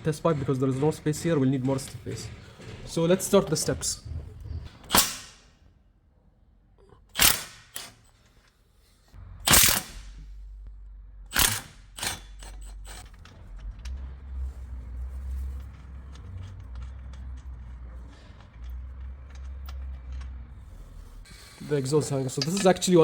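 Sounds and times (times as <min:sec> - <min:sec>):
low hum: 0:00.0 - 0:07.2, 0:08.8 - 0:21.5
sharp mechanical bursts: 0:07.1 - 0:08.0, 0:09.4 - 0:10.4, 0:11.3 - 0:13.2.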